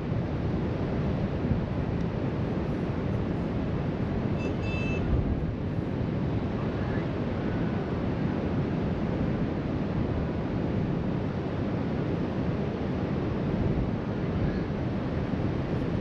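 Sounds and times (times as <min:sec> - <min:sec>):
wind buffeting microphone: 0:00.0 - 0:11.4.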